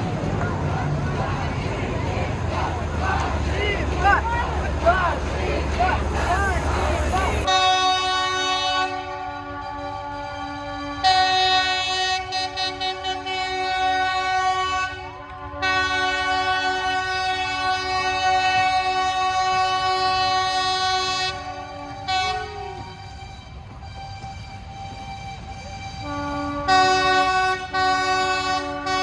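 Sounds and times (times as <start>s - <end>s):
diesel locomotive horn: 0.0s - 29.0s.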